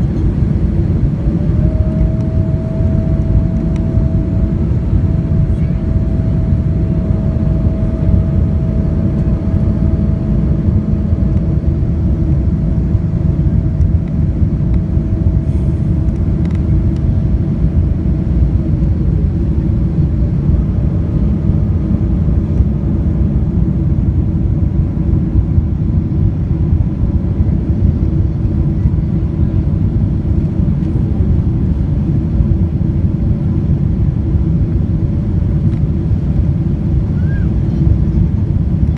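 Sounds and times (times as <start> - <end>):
faint whine sliding down: 0.0 - 13.9
airplane engines rumbling in cabin: 0.0 - 38.9.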